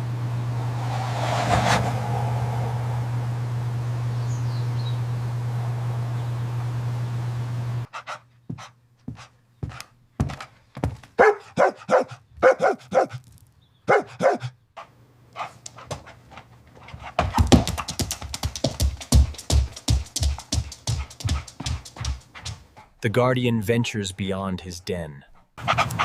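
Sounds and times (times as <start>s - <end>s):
dog barking: 11.2s - 13.2s, 13.9s - 14.6s.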